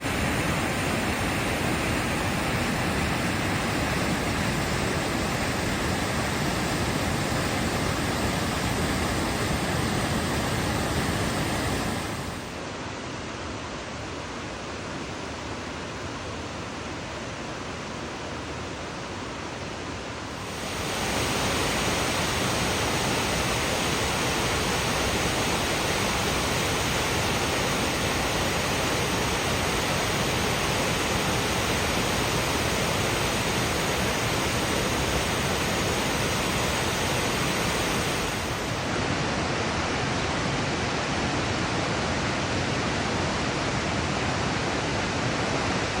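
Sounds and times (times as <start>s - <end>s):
waterfall rushing: 20.3s - 46.0s.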